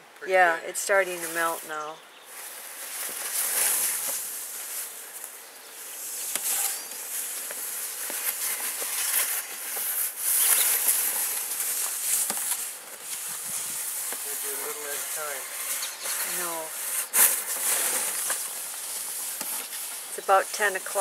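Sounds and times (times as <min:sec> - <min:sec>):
shovel scraping wet snow: 0:05.8 - 0:21.0.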